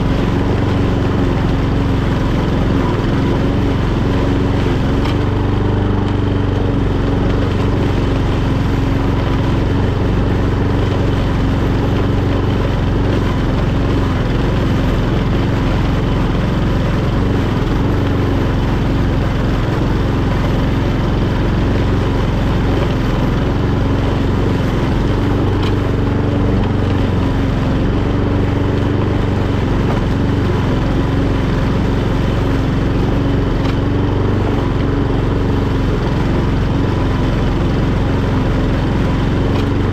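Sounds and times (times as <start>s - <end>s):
lawn mower engine droning: 0.0s - 39.9s.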